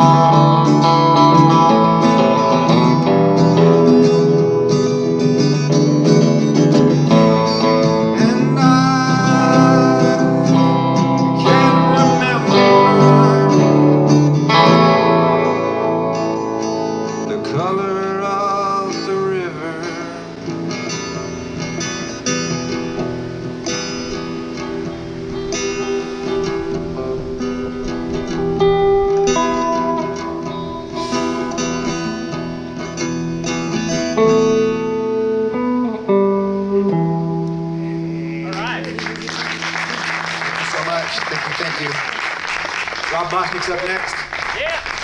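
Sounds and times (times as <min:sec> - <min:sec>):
person singing: 0:00.0 - 0:03.8, 0:07.4 - 0:15.1, 0:16.8 - 0:20.9
acoustic guitar strummed: 0:00.0 - 0:45.0.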